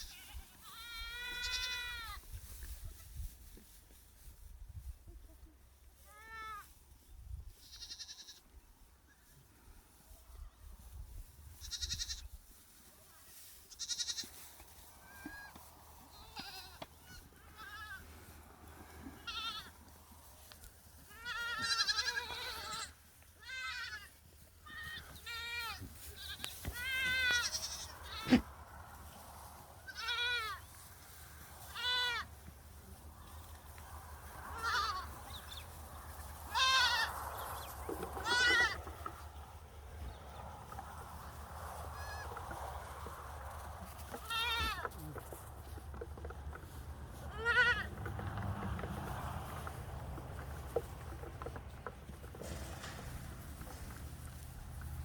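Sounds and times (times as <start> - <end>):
goats bleating: 0.0 - 2.2, 7.6 - 8.4, 11.6 - 12.3, 13.7 - 19.8, 21.0 - 28.6, 29.8 - 30.6, 31.7 - 32.3, 34.4 - 35.2, 36.5 - 37.3, 38.1 - 39.2, 41.9 - 42.5, 44.0 - 45.4, 47.1 - 48.2.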